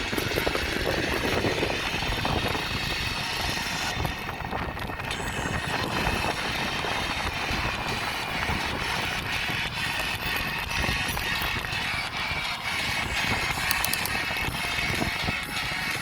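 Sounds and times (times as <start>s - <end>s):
road noise: 0.0s - 16.0s
wind rushing over microphone: 0.0s - 16.0s.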